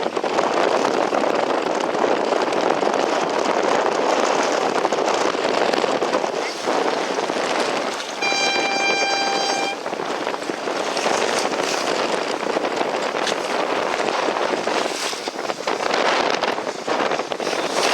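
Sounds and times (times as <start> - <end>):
water rushing past boat: 0.0 - 17.9
wind buffeting microphone: 0.0 - 17.9
horn blast: 8.2 - 9.9.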